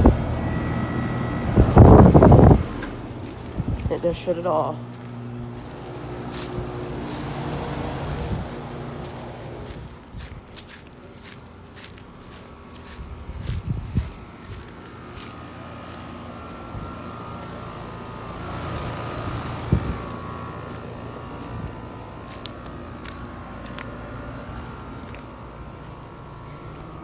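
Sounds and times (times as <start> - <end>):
steady tones: 0.0 - 10.0
air conditioner units humming: 0.0 - 27.0.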